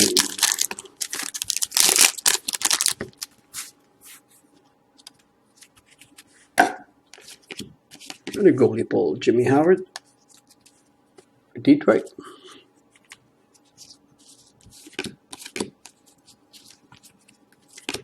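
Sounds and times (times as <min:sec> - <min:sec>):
foil packs rustling and tearing: 0:00.0 - 0:03.7
faint steady hum: 0:00.0 - 0:18.0.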